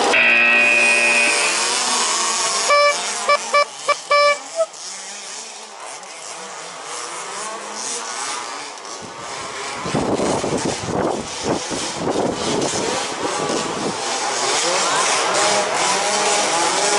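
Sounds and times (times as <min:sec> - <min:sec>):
loud steady pitched whine: 0:00.0 - 0:04.8
remote-control buggies running: 0:00.0 - 0:16.9
short electronic beeps: 0:02.6 - 0:04.7.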